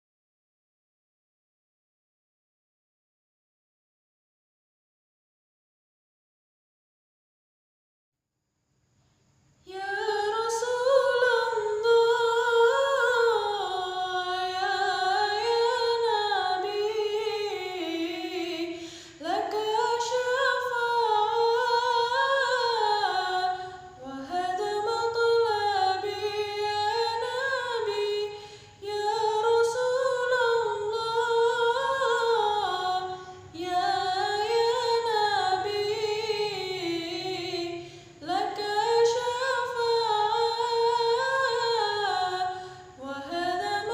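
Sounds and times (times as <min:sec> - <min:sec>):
woman singing unaccompanied: 0:09.6 - 0:43.9.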